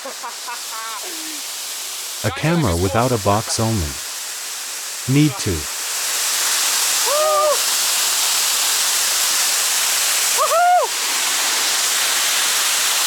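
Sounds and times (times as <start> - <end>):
person calling out: 2.2 - 4.0, 5.1 - 5.7.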